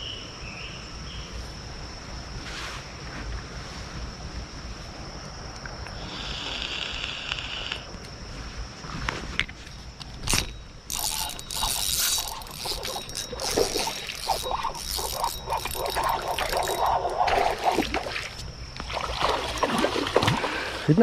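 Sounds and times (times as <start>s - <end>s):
scraping and splashing water: 10.3s - 21.0s.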